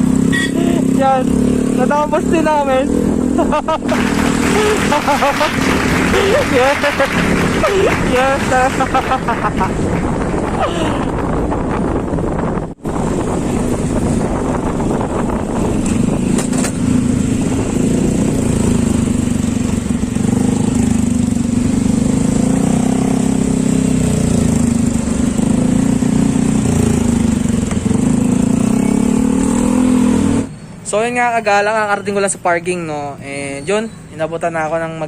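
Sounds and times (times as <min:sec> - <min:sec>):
scooter engine droning: 0:00.0 - 0:11.8, 0:13.0 - 0:30.6
wind rushing past microphone: 0:03.9 - 0:20.4.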